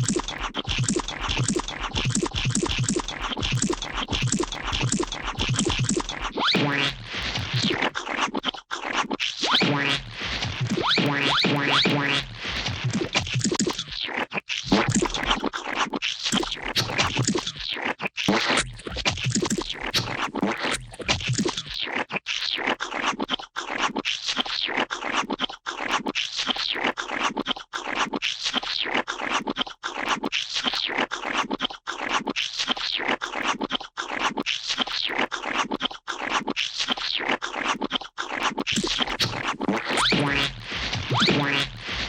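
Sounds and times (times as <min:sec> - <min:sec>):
wet slime squelching and scraping: 0:00.0 - 0:09.2, 0:35.0 - 0:42.0
pitched rising tones: 0:38.8 - 0:42.0.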